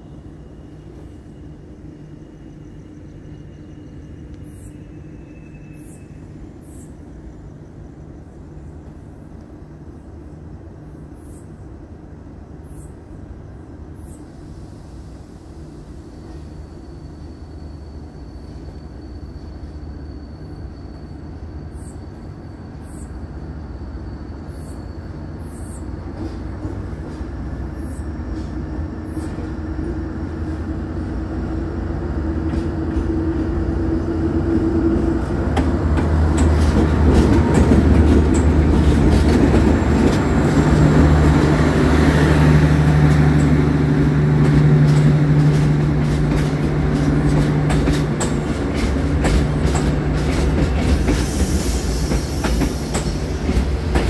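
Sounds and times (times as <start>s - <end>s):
diesel locomotive engine hum: 0.0s - 54.0s
train wheels clicking over rail joints: 32.2s - 41.7s, 42.5s - 54.0s.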